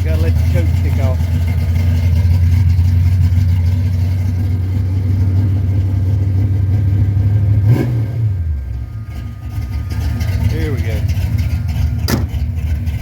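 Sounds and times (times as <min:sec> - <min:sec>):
car engine fast-idling: 0:00.0 - 0:13.0
engine throttle blip: 0:07.6 - 0:13.0.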